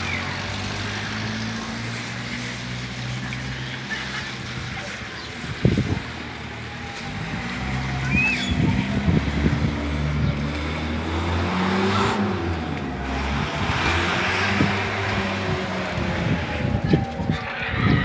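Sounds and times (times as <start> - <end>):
car engines running: 0.0 - 18.0
faint warning siren wailing: 3.8 - 18.0.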